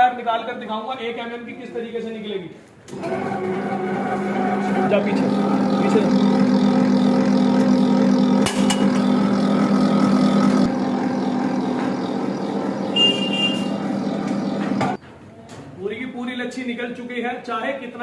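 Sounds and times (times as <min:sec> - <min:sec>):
wire stripping machine humming: 0:02.9 - 0:15.0.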